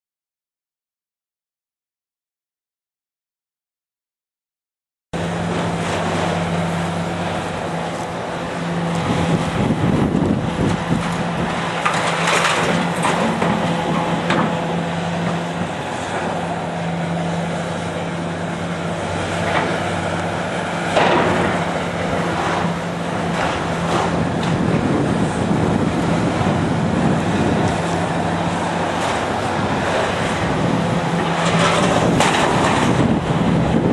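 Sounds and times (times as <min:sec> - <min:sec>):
demolition machine engine running: 0:05.2 - 0:33.9.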